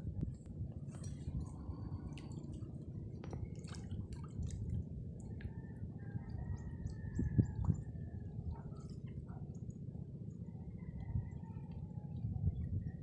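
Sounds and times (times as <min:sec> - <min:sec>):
water dripping and splashing: 0:03.2 - 0:05.5.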